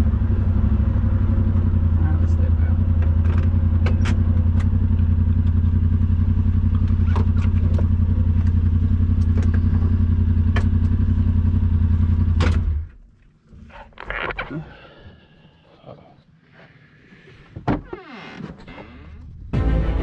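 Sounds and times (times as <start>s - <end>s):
engine idling: 0.0s - 12.4s.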